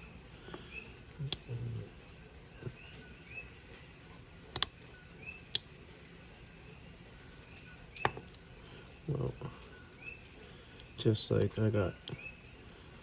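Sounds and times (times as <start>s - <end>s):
lock pick metallic clicks: 4.5s - 4.8s.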